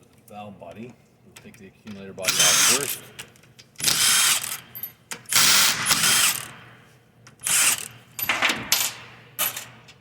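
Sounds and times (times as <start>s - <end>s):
power driver spinning bolts: 3.8s - 6.6s, 7.4s - 8.4s.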